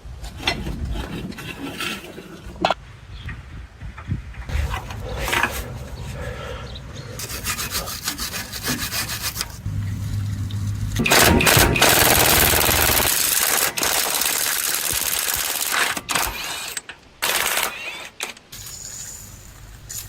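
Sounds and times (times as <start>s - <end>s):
low hum: 2.8s - 13.4s
steady rasping hiss: 4.5s - 11.1s, 18.5s - 20.0s
rhythmic scraping strokes: 7.1s - 15.6s.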